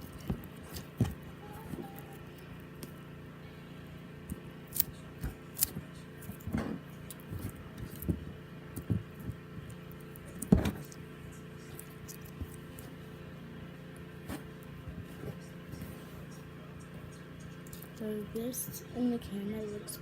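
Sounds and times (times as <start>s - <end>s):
low background hum: 0.0s - 20.0s
slime squishing and popping: 4.3s - 6.5s.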